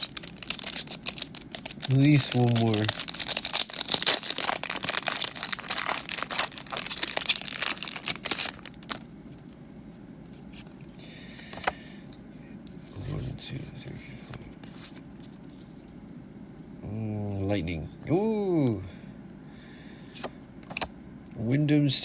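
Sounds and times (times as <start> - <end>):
foil wrapper crinkling and tearing: 0.0 - 9.1.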